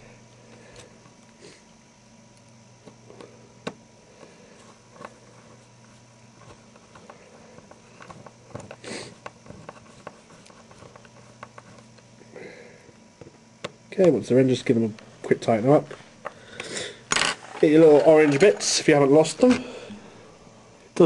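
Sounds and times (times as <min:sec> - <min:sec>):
handling noise: 0:17.1 - 0:19.7.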